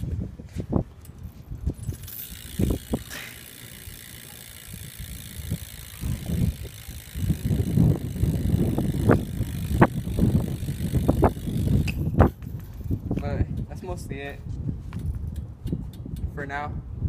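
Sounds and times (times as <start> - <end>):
bike freewheel hub ticking: 1.0 - 14.0.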